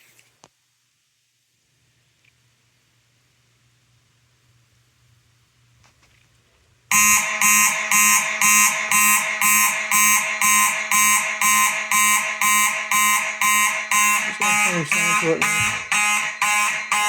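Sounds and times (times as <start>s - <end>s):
fire alarm horns buzzing: 6.9s - 17.0s.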